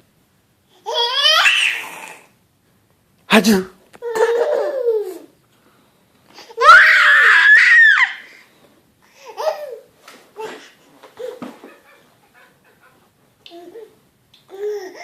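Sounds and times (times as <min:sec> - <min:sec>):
baby squealing: 0:00.9 - 0:02.3
baby laughing: 0:04.0 - 0:05.3, 0:09.2 - 0:15.0.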